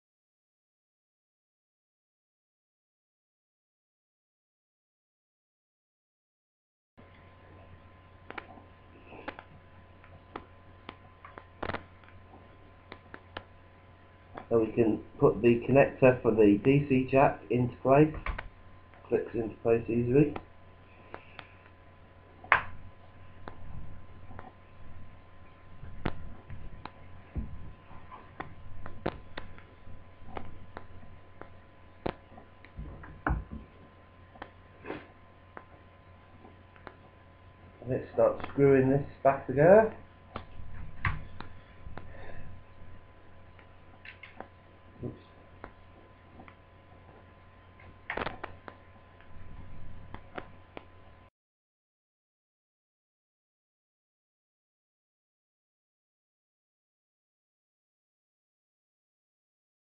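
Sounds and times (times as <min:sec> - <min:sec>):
low electrical hum: 0:07.0 - 0:51.3
small clicks of laptop parts: 0:44.0 - 0:44.5.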